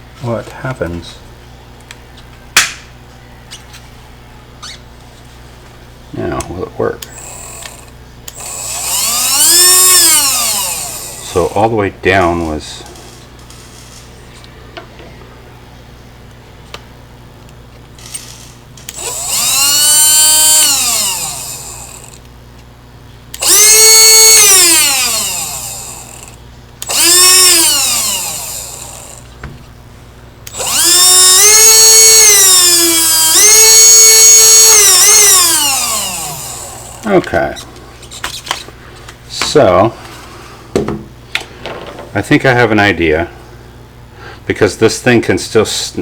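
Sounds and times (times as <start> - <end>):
leaf blower whining: 7.0 - 14.0, 18.0 - 22.3, 23.3 - 29.4, 30.5 - 38.2.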